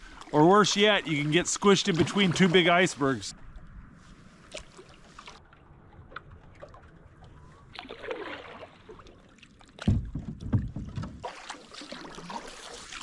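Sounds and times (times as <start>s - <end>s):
paddle strokes swishing through water: 0.0s - 13.0s
loud low thuds and rumbles: 9.9s - 11.2s.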